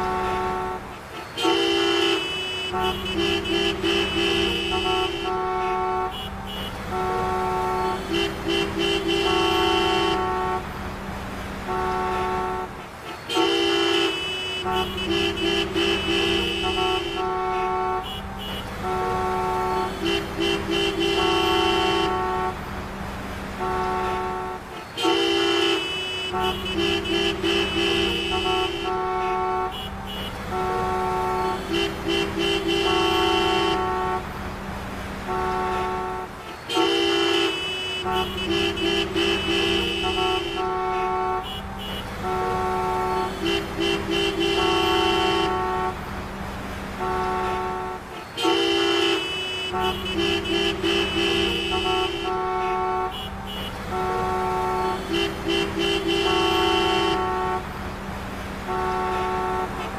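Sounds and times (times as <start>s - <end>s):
car horns honking: 0.0s - 59.9s
idling traffic rumble: 0.0s - 59.9s.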